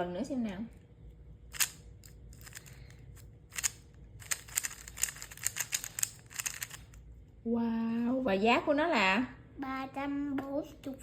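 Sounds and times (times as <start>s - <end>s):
puzzle cube clicking turns: 1.5s - 2.8s, 3.5s - 7.0s.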